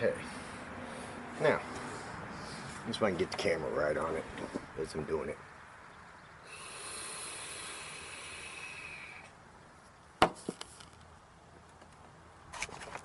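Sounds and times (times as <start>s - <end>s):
airy hiss with faint whistle: 6.4s - 9.3s.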